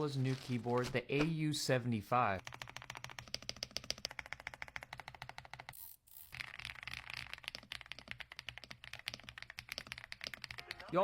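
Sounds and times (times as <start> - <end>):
mechanical keyboard typing: 2.4 - 10.9.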